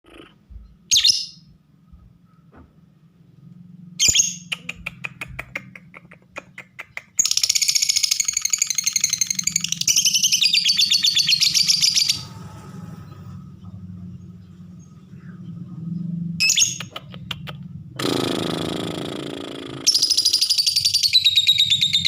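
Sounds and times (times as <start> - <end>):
lovebird chirping and trilling: 0.5 - 1.5, 4.0 - 12.3, 16.4 - 17.5, 19.6 - 22.0.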